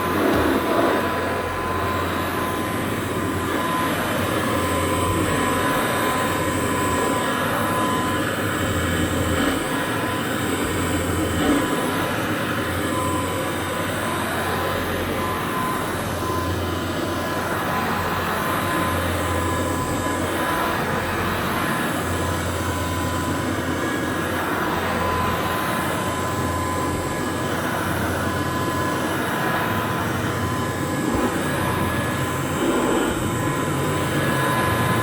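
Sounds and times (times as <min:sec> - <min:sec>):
upright vacuum cleaner running: 0:00.0 - 0:35.0.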